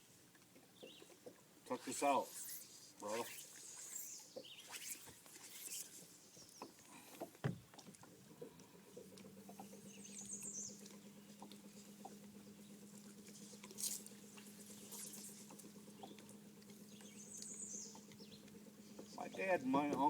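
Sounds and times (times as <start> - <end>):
low motor hum: 0.4 - 20.0
gear clicking and rattling: 8.0 - 20.0.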